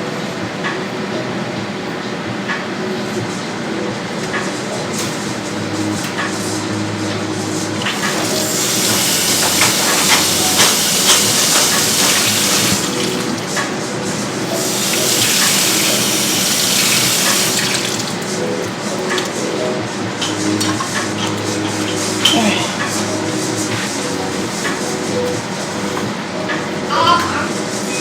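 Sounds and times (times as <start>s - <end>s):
tap water running into sink: 4.9s - 19.6s.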